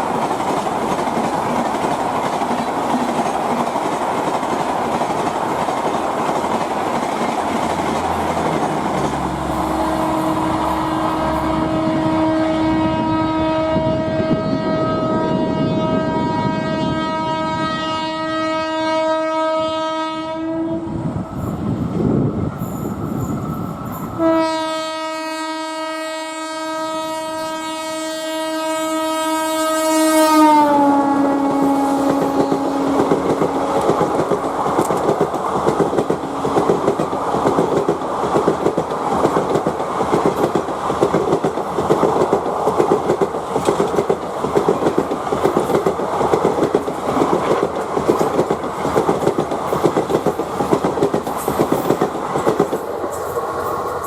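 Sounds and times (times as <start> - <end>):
train wheels clattering on rails: 0.0 - 11.6, 32.0 - 54.0
locomotive horn blasts: 9.3 - 20.9, 24.2 - 33.9.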